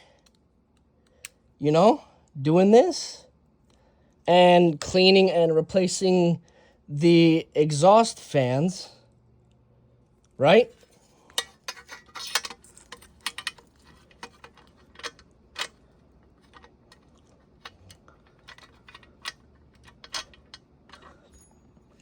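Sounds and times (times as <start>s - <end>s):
small parts clicking and tapping: 11.2s - 22.0s.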